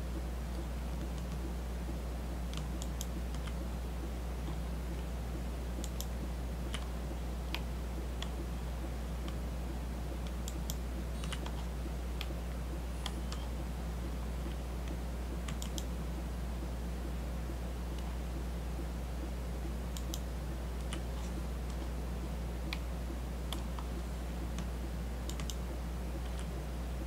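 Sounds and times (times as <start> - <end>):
low electrical hum: 0.0 - 27.0
computer mouse clicks: 0.5 - 1.5, 2.5 - 3.6, 5.8 - 6.9, 7.5 - 8.5, 10.2 - 12.4, 13.0 - 15.9, 19.9 - 21.9, 22.6 - 22.9, 23.5 - 26.6.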